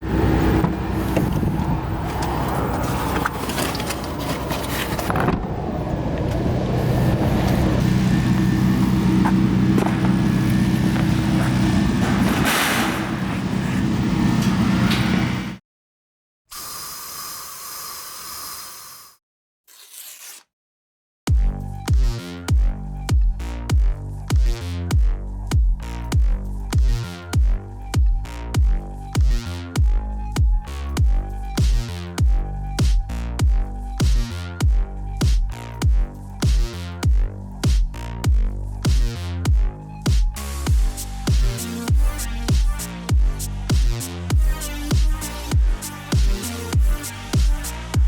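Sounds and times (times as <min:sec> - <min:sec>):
synth tones and sweeps: 0:00.0 - 0:15.6
quadcopter motors buzzing: 0:16.5 - 0:19.2
heavy kick drum: 0:21.3 - 0:48.0
electronic dance music: 0:21.4 - 0:48.0.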